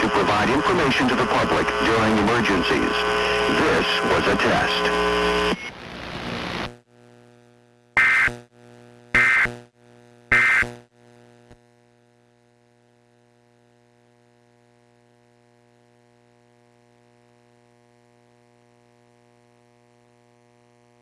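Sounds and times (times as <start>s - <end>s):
harsh digital data bursts: 0.0s - 5.6s, 8.0s - 8.4s, 9.2s - 9.6s, 10.3s - 10.7s.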